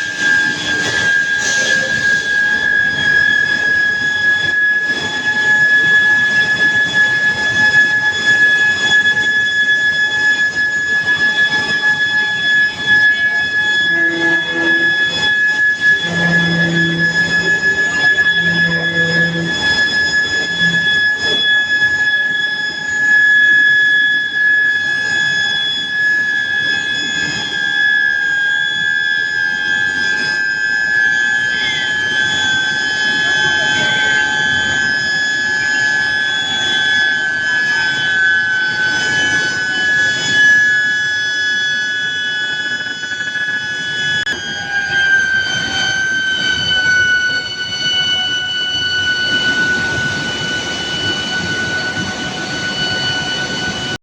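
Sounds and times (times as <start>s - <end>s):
machinery rushing noise: 0.0s - 4.4s, 11.2s - 22.8s
machinery noise: 0.0s - 6.3s, 10.0s - 23.1s, 31.6s - 40.7s, 44.0s - 54.0s
high-pitched induction coil whine: 0.0s - 54.0s.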